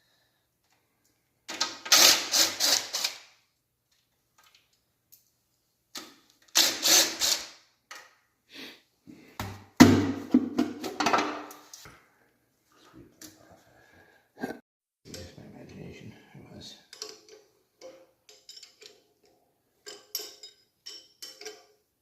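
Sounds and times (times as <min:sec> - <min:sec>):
impact wrench rattling: 0:01.5 - 0:03.3, 0:06.4 - 0:07.5.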